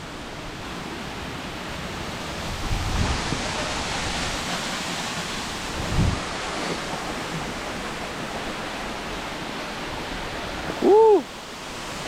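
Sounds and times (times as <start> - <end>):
waterfall rushing: 0.1 - 12.0
wind buffeting microphone: 2.4 - 4.6, 5.4 - 8.3.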